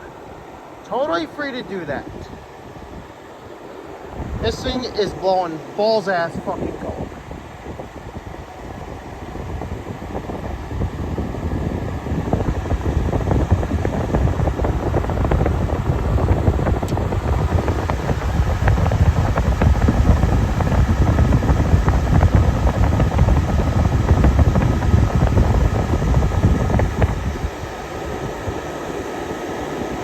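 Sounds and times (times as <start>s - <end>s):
air conditioner fan blowing: 0.0s - 30.0s.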